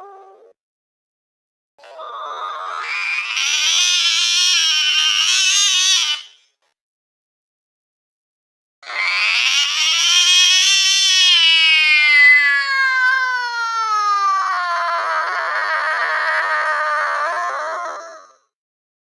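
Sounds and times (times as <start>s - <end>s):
slowed cat yowl: 8.8s - 18.5s.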